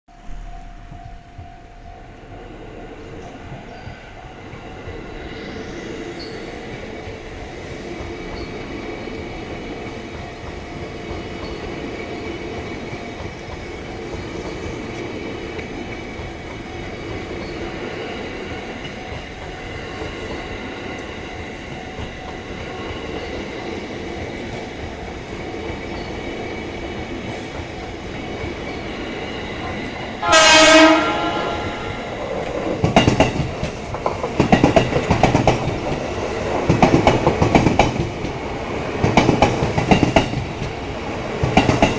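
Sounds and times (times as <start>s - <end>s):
train wheels clattering: 0.3s - 41.9s
train horn blast: 30.2s - 32.2s.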